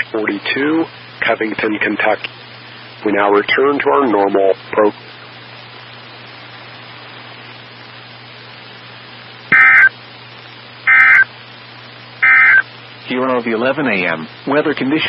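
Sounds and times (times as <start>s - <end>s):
radio receiver hiss: 0.0s - 8.9s, 9.5s - 14.5s
shrill data bursts: 9.5s - 9.9s, 10.9s - 11.3s, 12.2s - 12.6s.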